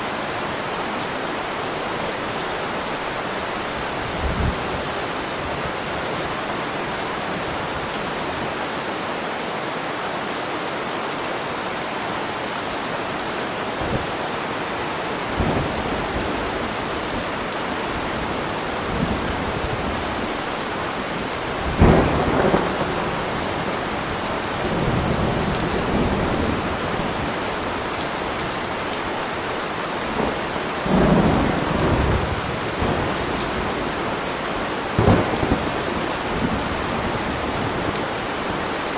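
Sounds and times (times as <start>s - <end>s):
heavy rain: 0.0s - 38.9s
thunder rumbling: 18.0s - 27.0s, 35.0s - 38.0s.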